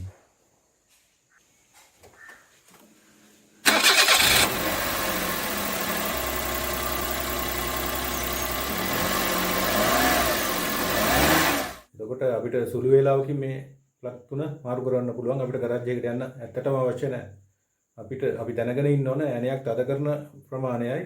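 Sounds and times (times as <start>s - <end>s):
car engine starting and idling: 3.6s - 11.8s
engine revving blips: 3.7s - 11.8s.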